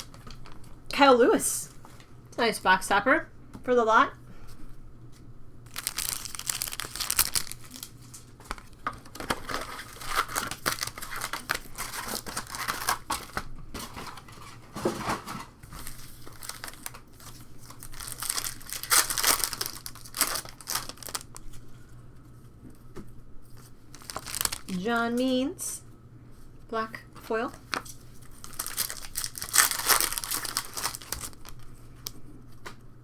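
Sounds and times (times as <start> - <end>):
wrappers crinkling and ripping: 0.0 - 0.8, 5.7 - 21.7, 23.5 - 24.9, 27.5 - 32.2.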